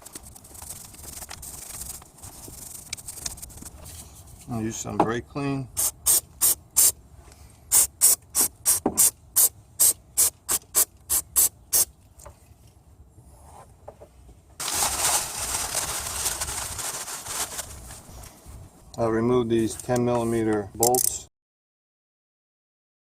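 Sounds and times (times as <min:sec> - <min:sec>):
aerosol can spraying: 0:05.8 - 0:06.9.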